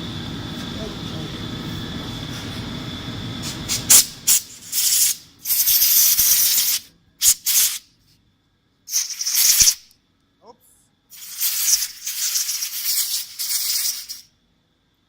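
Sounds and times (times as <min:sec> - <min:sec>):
machine rumble: 0:00.0 - 0:04.3
air blow gun hissing blasts: 0:03.4 - 0:07.9, 0:08.9 - 0:09.8, 0:11.1 - 0:14.3.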